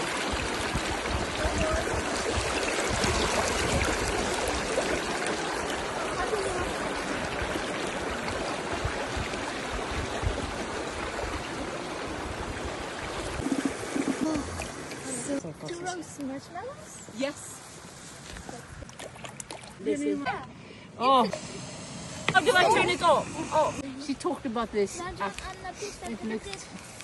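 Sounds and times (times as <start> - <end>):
stream rushing: 0.0 - 15.6.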